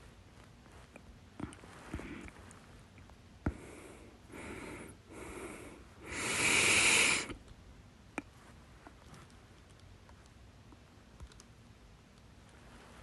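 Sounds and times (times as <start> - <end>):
person breathing: 1.4 - 2.5, 3.4 - 7.4.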